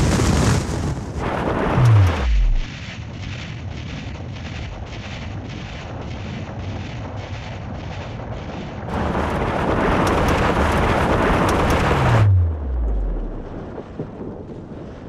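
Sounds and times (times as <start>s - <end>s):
wind noise: 0.0s - 15.0s
loud rushing noise: 1.2s - 3.0s, 8.7s - 13.7s
low hum falling in pitch: 1.6s - 2.7s, 9.7s - 13.7s.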